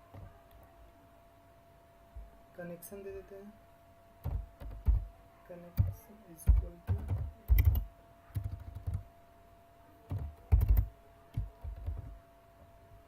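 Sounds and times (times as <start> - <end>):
faint steady hum: 0.0 - 13.0
typing on a keyboard: 4.2 - 5.1, 5.8 - 9.1, 10.1 - 12.2.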